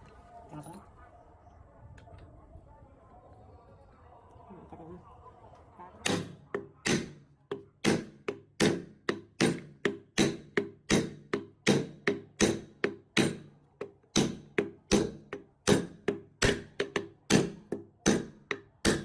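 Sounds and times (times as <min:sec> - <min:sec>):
hammer striking metal: 0:06.0 - 0:13.5.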